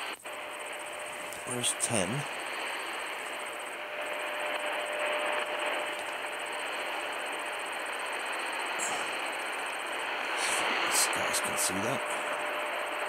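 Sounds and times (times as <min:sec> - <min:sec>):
radio static hiss: 0:00.0 - 0:13.0.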